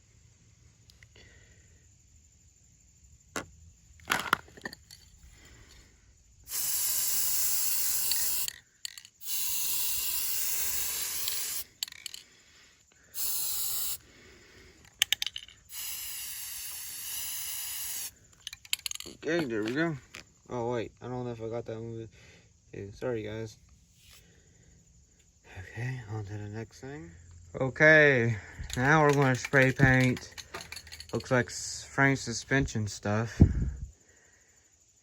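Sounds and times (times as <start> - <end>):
handling clicks and knocks: 3.4 - 5.2, 11.8 - 12.3, 14.9 - 15.6, 18.4 - 20.2, 28.6 - 31.5
spray paint can hissing: 6.5 - 12.1, 13.1 - 14.0, 15.7 - 19.0, 28.7 - 31.0.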